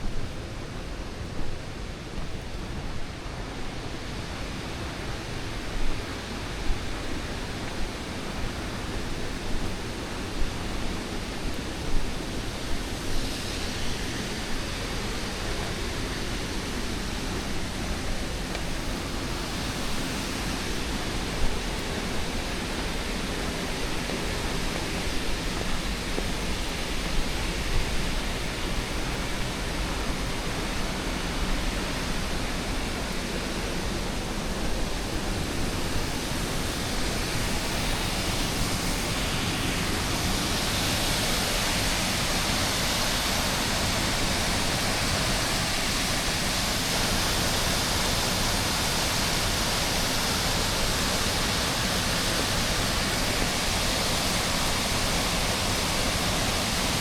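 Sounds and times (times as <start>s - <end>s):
waterfall rushing: 0.2s - 57.0s.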